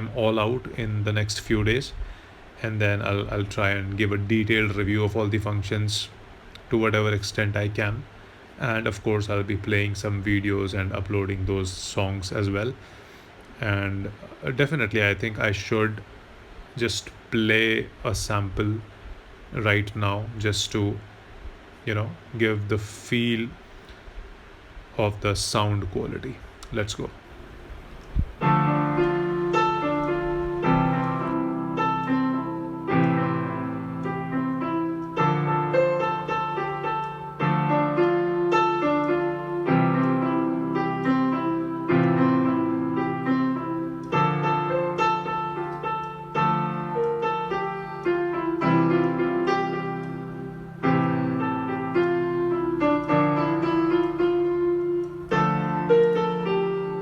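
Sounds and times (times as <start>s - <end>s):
slow piano piece on keyboard: 27.3s - 57.0s.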